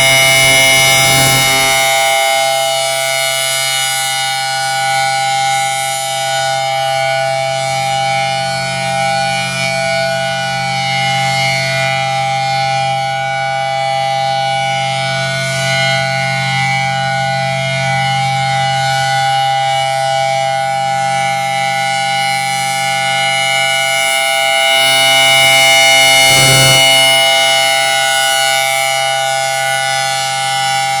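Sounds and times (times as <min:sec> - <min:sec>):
outdoor warning siren steady tone: 0:00.0 - 0:31.0.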